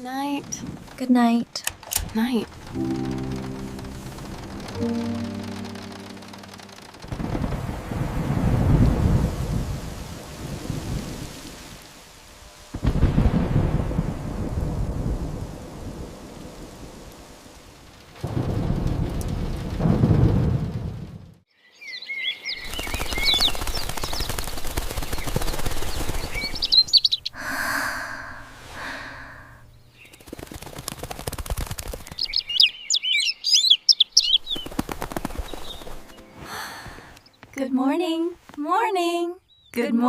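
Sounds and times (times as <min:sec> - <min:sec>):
thunder rumbling: 0:00.0 - 0:21.4
heavy rain: 0:02.1 - 0:21.4
birds chirping: 0:21.6 - 0:30.4, 0:32.0 - 0:37.8.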